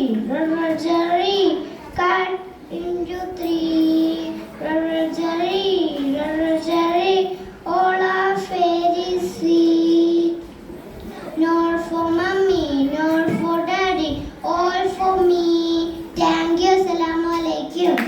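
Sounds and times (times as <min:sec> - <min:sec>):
girl singing: 0:11.7 - 0:18.0.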